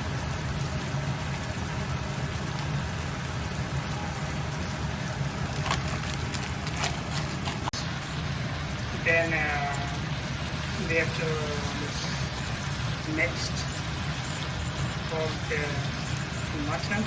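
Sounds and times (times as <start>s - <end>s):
meat frying sizzling: 0.0s - 17.0s.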